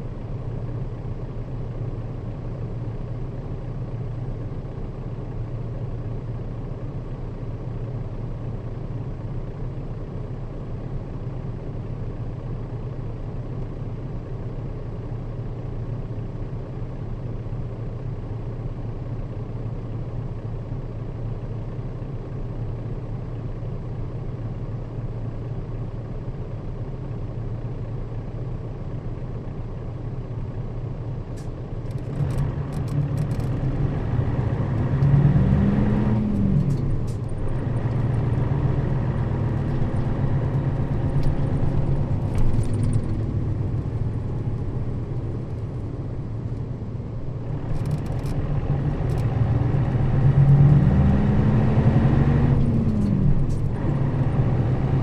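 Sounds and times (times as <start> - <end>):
bus diesel engine revving: 32.1 - 55.0.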